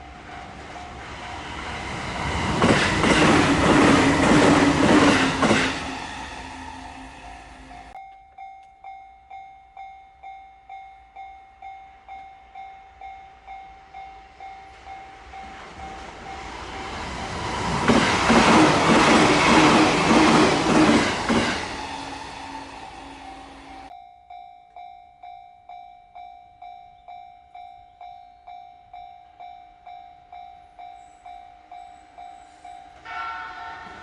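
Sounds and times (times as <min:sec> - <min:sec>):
train passing at speed: 0:00.0 - 0:08.0, 0:11.6 - 0:23.9, 0:29.4 - 0:34.0
train wheels clattering: 0:00.4 - 0:08.0, 0:15.4 - 0:23.9.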